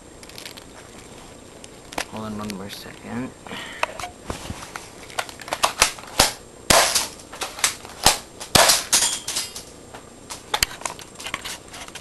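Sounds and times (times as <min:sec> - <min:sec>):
airsoft shotgun shots: 0:05.7 - 0:07.1, 0:08.0 - 0:08.9.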